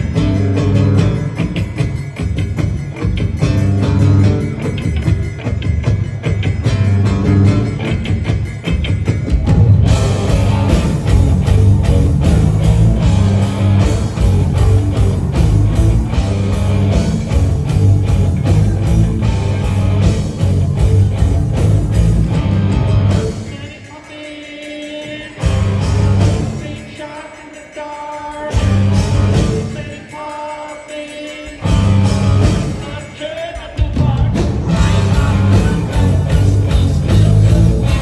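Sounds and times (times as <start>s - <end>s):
rock band playing live: 0.0s - 23.9s, 25.0s - 27.2s, 28.2s - 30.2s, 31.4s - 38.0s
person singing: 23.2s - 38.0s.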